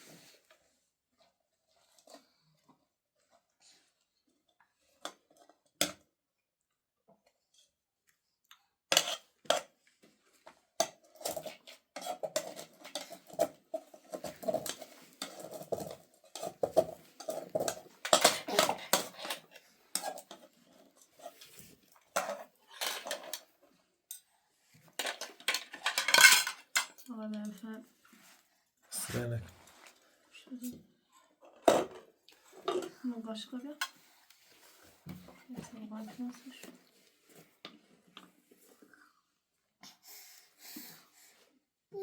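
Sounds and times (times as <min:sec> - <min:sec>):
spoons clinking on metal dishes: 0:25.0 - 0:27.1.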